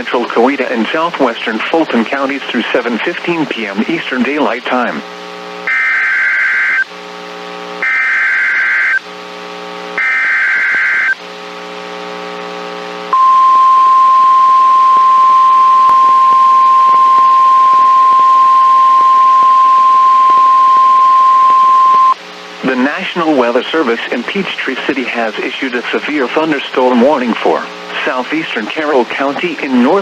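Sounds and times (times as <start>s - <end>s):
low buzz: 12.3s - 22.6s
steady warning alarm tone: 13.2s - 22.2s
two-tone data screech: 13.2s - 22.2s.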